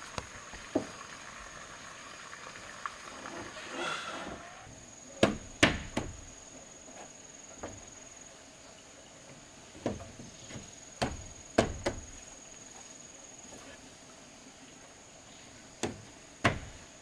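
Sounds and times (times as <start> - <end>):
sharp knocks: 5.2 - 6.4, 9.8 - 12.2, 15.8 - 16.9.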